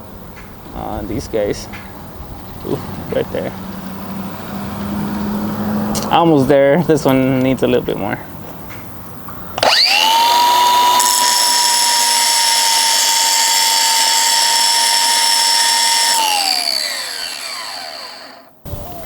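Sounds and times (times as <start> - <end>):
electric grinder whine: 9.6 - 19.0.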